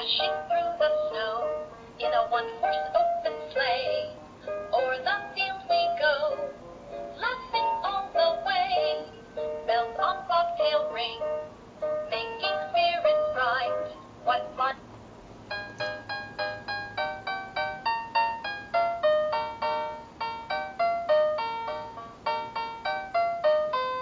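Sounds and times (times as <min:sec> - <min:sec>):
children's song from toy speaker: 0:00.0 - 0:14.8.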